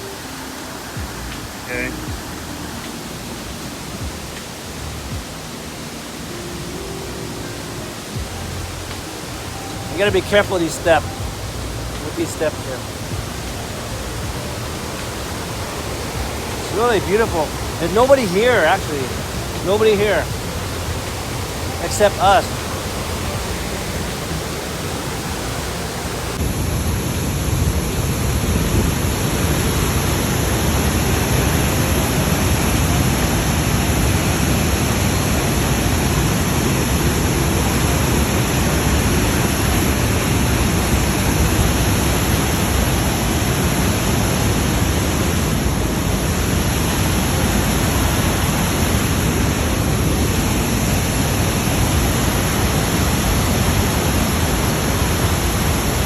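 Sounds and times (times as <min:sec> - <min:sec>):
waterfall roar: 0:00.0 - 0:56.0.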